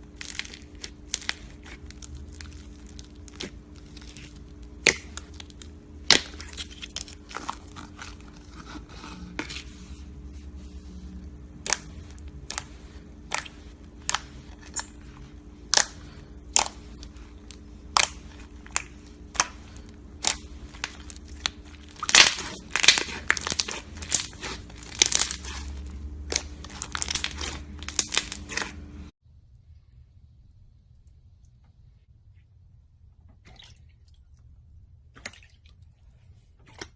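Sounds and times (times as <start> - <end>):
slime popping when squeezed: 20.2 - 25.6.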